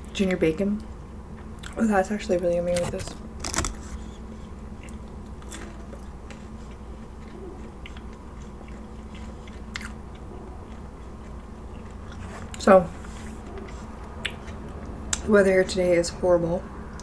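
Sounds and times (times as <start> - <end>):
mouth chewing food: 3.5 - 15.2.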